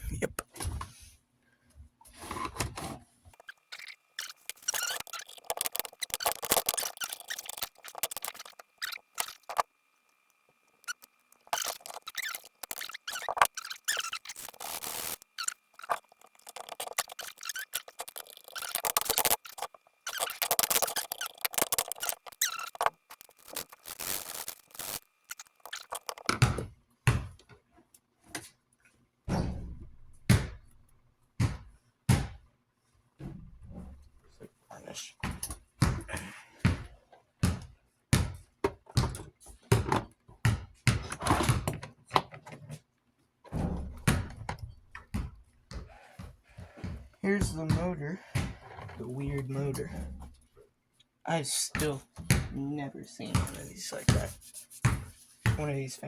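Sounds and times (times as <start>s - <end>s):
hands scraping fan parts: 2.1s - 9.7s, 10.8s - 26.3s.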